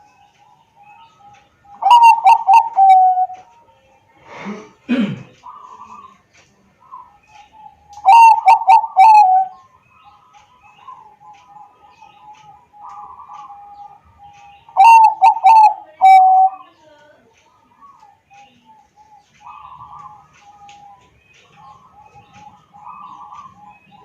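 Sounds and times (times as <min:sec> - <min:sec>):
dove cooing: 0:01.8 - 0:03.5, 0:08.0 - 0:09.6, 0:14.7 - 0:16.8, 0:21.5 - 0:24.0.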